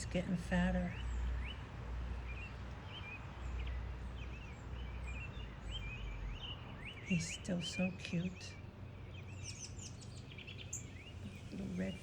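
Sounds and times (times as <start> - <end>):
small birds chirping: 0.0 - 12.0
low outdoor rumble: 7.0 - 12.0.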